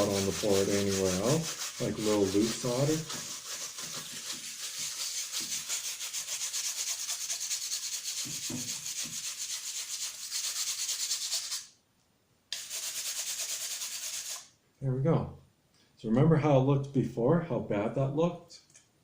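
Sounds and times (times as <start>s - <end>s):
brush scrubbing circuit board: 0.0s - 11.7s, 12.6s - 14.5s.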